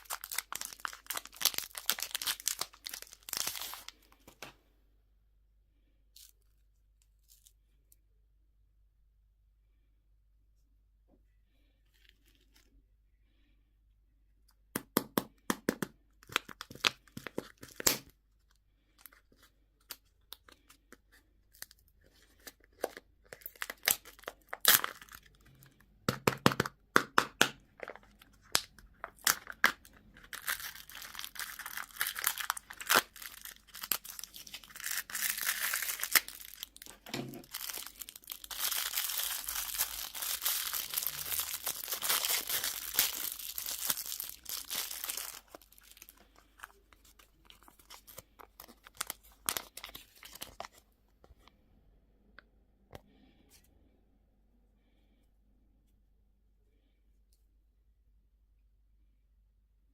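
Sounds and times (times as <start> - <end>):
candy wrapper crinkling: 0.0 - 4.4, 15.8 - 50.8.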